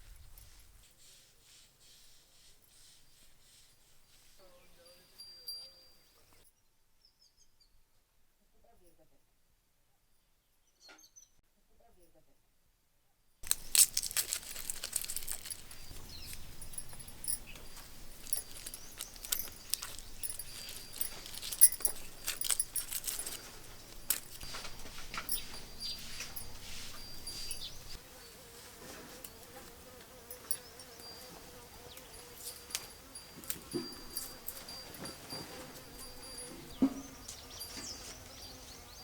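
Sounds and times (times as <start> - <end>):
insects droning: 13.4 - 28.6.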